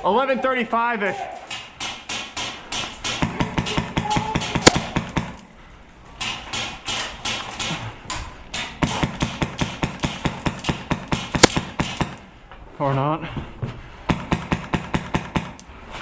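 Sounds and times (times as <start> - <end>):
airsoft rifle shots: 1.5 - 5.4, 8.5 - 12.2.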